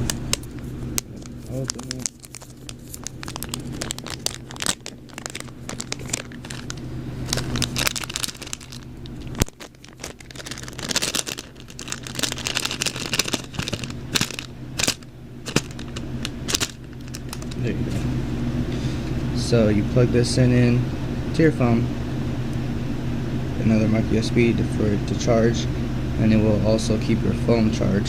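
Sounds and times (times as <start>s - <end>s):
packaging crinkling and tearing: 0.0s - 17.7s.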